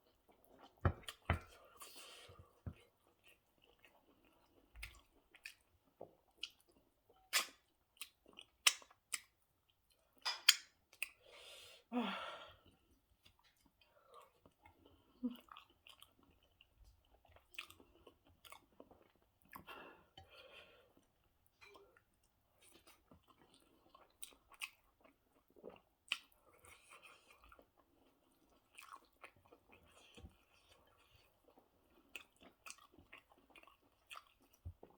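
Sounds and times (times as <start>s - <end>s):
person chewing and smacking: 0.1s - 11.2s, 13.2s - 19.7s, 21.0s - 34.9s.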